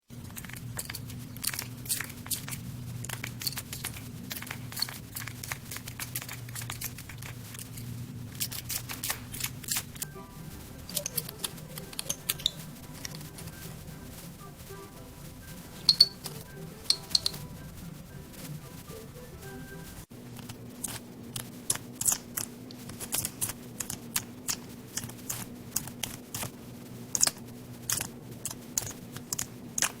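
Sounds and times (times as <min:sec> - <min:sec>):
low hum: 0:00.0 - 0:30.0
chick pecking at food: 0:00.1 - 0:10.0, 0:10.8 - 0:14.5, 0:15.6 - 0:17.7
chick pecking taps and crunches: 0:10.9 - 0:13.5, 0:15.8 - 0:17.5.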